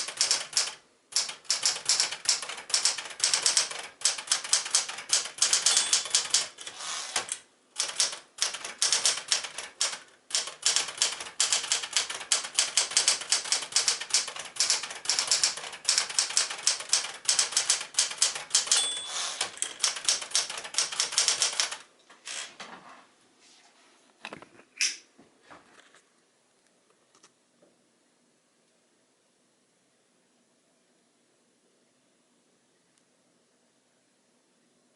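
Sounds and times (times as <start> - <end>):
typewriter keystroke clacks: 0.0 - 21.8
typewriter bell ring: 5.1 - 6.6, 17.0 - 21.8.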